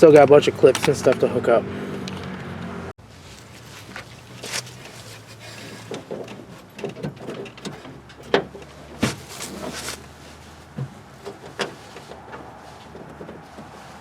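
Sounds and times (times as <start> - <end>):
clicks and knocks of car door parts: 5.8 - 10.0.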